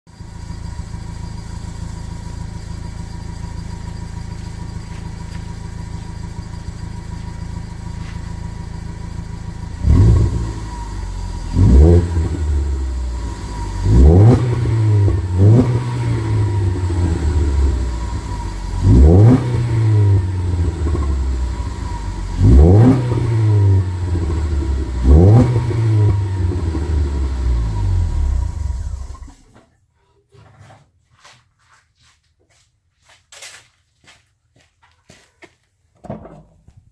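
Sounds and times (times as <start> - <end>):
car engine idling and revving: 0.1 - 29.5.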